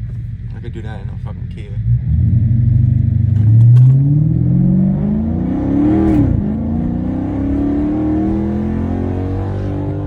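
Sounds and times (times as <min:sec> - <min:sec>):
car engine accelerating hard: 0:01.5 - 0:10.0.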